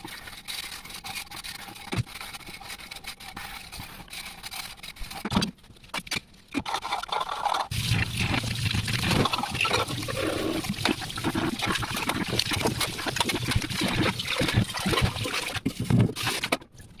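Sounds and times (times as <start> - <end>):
running water splashing: 7.7 - 15.6.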